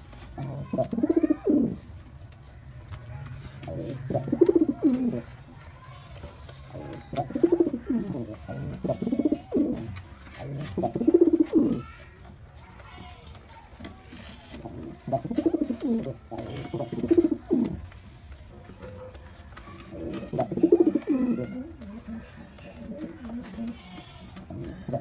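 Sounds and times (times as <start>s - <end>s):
pigeon cooing: 3.6s - 5.3s, 6.7s - 11.9s, 14.6s - 17.8s, 19.8s - 25.0s.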